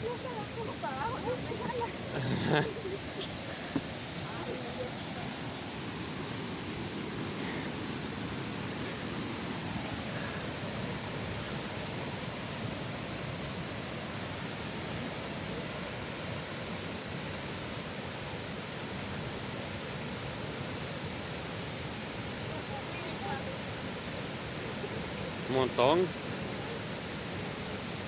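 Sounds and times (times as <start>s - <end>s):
waterfall rushing: 0.0s - 28.0s.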